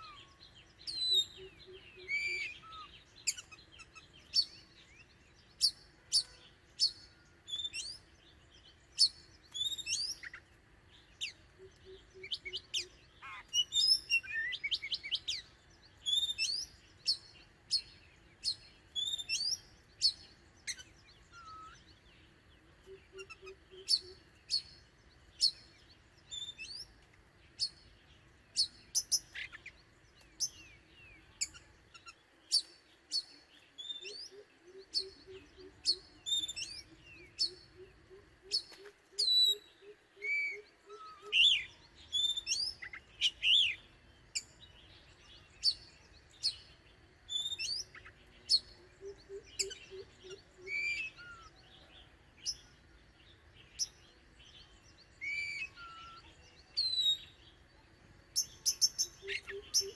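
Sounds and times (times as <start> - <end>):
bird chirping and whistling: 0.9 - 3.5, 55.2 - 57.3.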